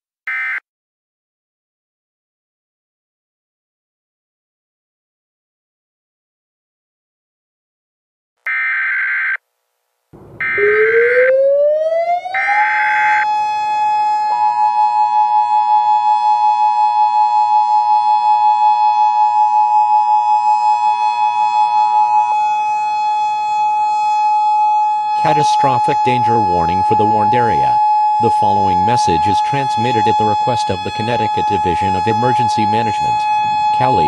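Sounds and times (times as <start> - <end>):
siren winding up: 8.5 - 9.4, 10.2 - 34.0
two-tone attention signal: 10.2 - 11.6.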